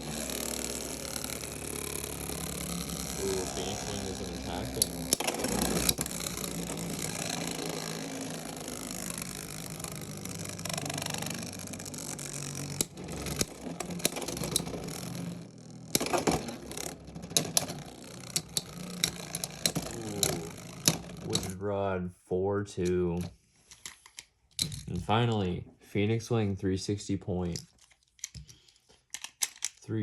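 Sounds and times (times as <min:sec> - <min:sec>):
spinning tops whirring and grinding: 0:00.0 - 0:21.7
sharp plastic clacks: 0:27.4 - 0:29.9.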